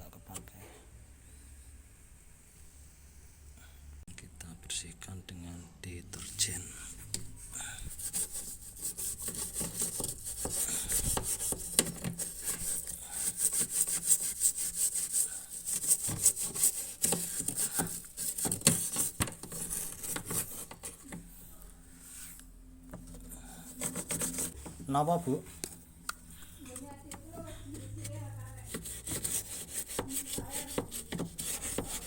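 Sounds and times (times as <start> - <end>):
toothbrush scrubbing: 8.0 - 21.0, 27.7 - 32.0.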